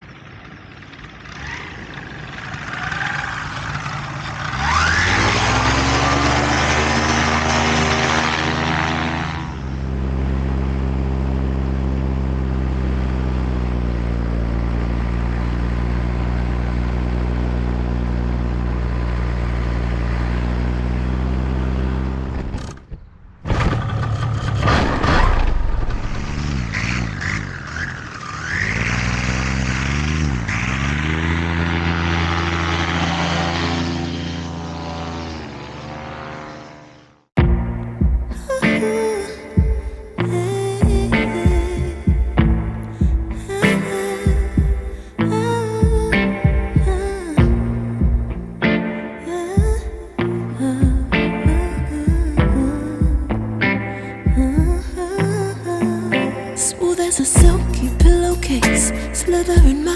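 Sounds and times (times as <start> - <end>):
paramotor engine and propeller: 0.0 - 37.3.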